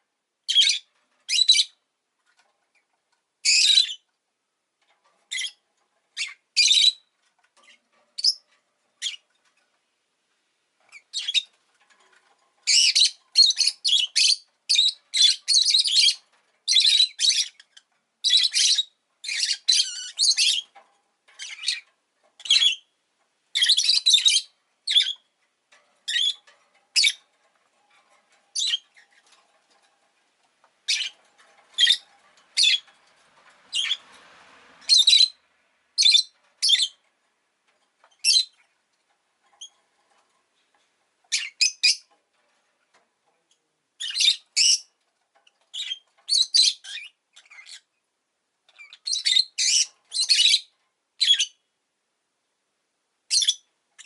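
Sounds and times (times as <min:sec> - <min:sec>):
lovebird chirping: 0:00.5 - 0:01.8, 0:03.4 - 0:04.1, 0:06.2 - 0:07.1, 0:10.9 - 0:11.5, 0:12.6 - 0:20.7, 0:21.4 - 0:21.8, 0:22.4 - 0:22.9, 0:23.5 - 0:25.2, 0:26.1 - 0:27.2, 0:28.5 - 0:29.2, 0:30.9 - 0:31.2, 0:31.8 - 0:32.9, 0:33.7 - 0:34.0, 0:34.8 - 0:35.4, 0:36.0 - 0:37.0, 0:38.2 - 0:38.6, 0:41.3 - 0:42.1, 0:44.0 - 0:44.9, 0:45.7 - 0:47.9, 0:48.8 - 0:51.6, 0:53.3 - 0:54.0.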